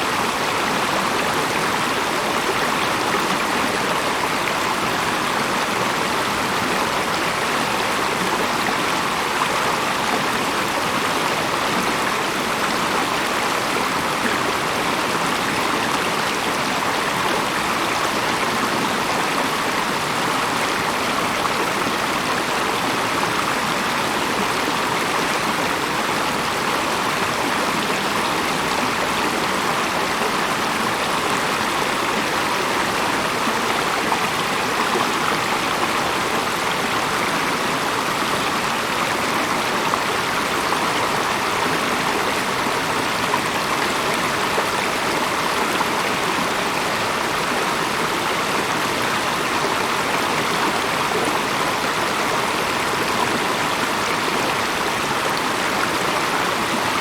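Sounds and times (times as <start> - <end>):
stream water rushing: 0.0 - 57.0.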